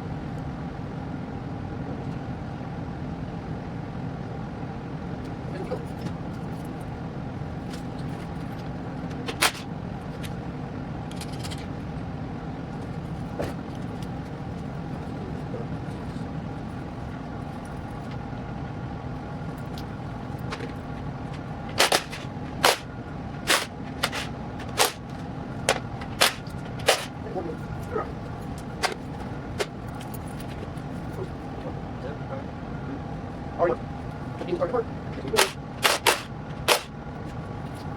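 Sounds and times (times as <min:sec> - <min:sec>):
steady machine hum: 0:00.0 - 0:37.9
engine parts clanking: 0:07.6 - 0:10.4, 0:11.1 - 0:11.8, 0:19.5 - 0:31.8, 0:34.0 - 0:37.8.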